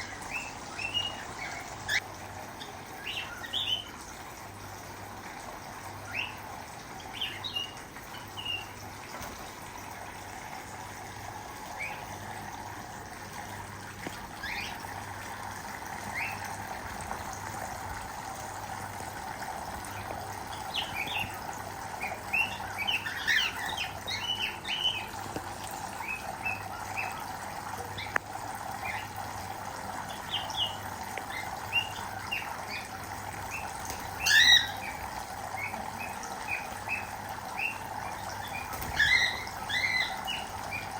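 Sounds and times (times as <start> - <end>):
cockatiels chirping and squawking: 22.0 - 25.1, 33.5 - 35.0, 38.4 - 40.9.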